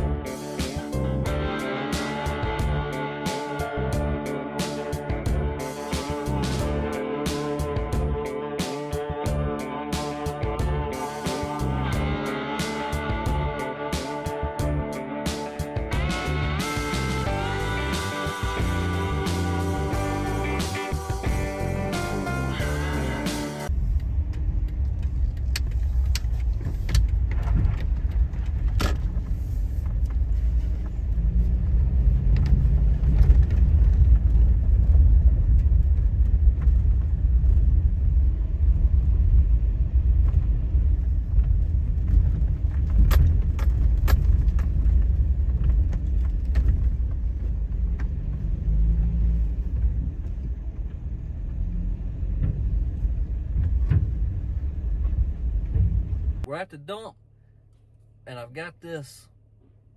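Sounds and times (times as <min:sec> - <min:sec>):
vehicle rumbling on road: 0:15.6 - 0:56.5.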